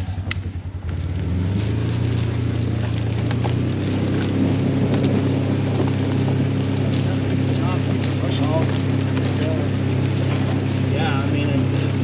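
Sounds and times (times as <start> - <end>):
vehicle engine pulling away: 0.0 - 12.0.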